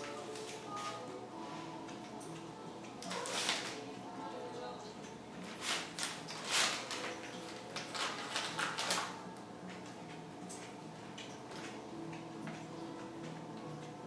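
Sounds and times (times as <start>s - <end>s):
paper rustling and crinkling: 3.0s - 3.9s, 5.4s - 9.2s.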